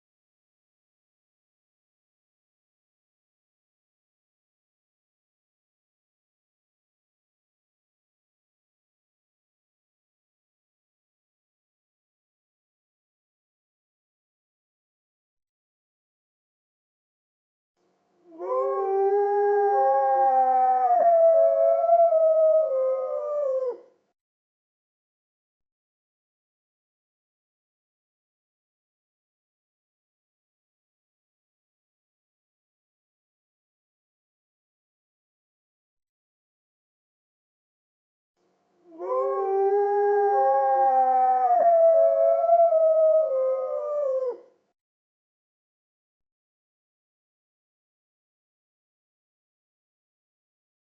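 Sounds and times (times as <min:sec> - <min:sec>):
wolf howling: 0:18.3 - 0:23.8, 0:38.9 - 0:44.4.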